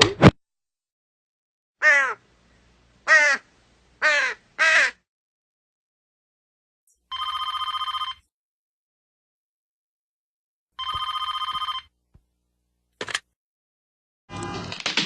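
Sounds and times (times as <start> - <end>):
crow cawing: 1.8 - 2.2, 3.1 - 5.0
telephone bell ringing: 7.1 - 8.3, 10.8 - 11.9.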